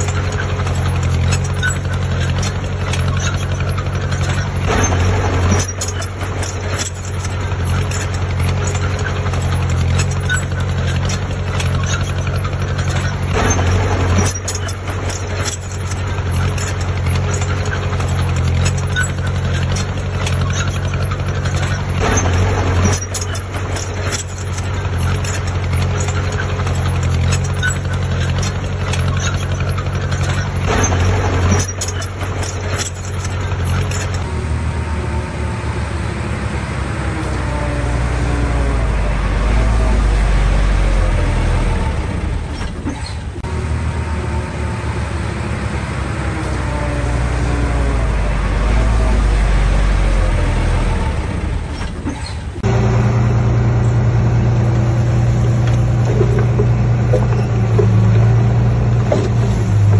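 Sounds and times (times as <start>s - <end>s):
diesel machinery engine drone: 0.0s - 59.9s
knocks and clanks: 0.0s - 59.9s.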